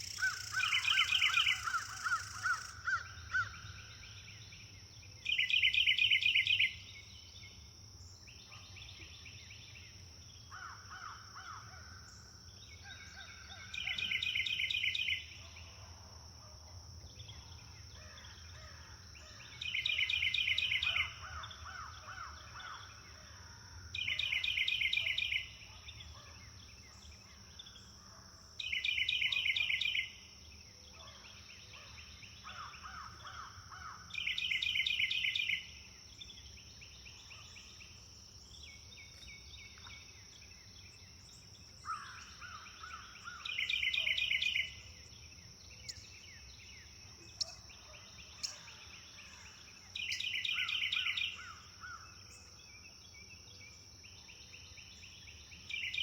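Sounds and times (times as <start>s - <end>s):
bird buzzy song: 0.0s - 3.5s.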